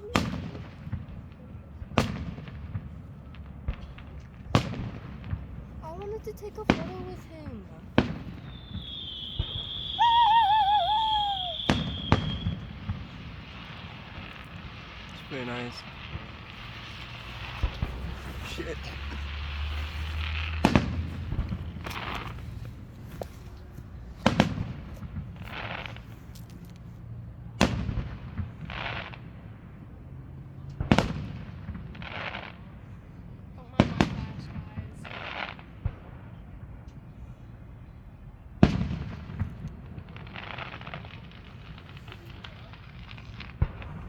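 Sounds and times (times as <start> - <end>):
firework bangs: 0.0 - 26.2, 27.6 - 29.5, 30.8 - 32.6, 38.6 - 44.0
firework hissing bursts: 8.0 - 22.9
firework whistle: 8.3 - 13.1.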